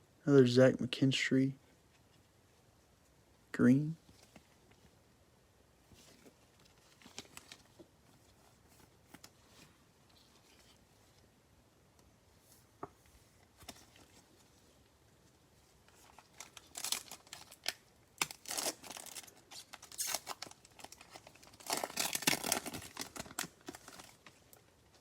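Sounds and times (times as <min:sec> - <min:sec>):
wrapper tearing and crinkling: 0:15.9 - 0:24.6.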